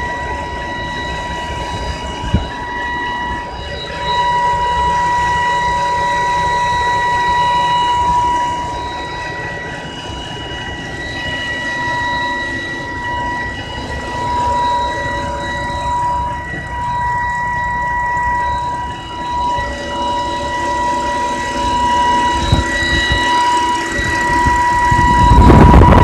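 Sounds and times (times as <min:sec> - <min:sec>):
high-pitched engine whine: 0:00.0 - 0:26.0.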